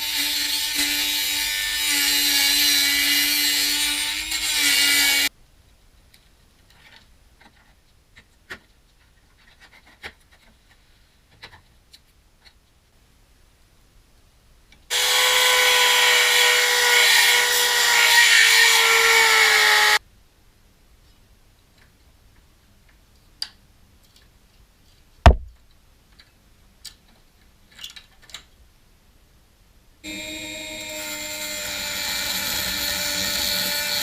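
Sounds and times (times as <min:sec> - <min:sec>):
power tool grinding steel: 0:00.0 - 0:05.3, 0:14.9 - 0:20.0, 0:30.1 - 0:34.0
heavy thump: 0:25.3 - 0:25.5.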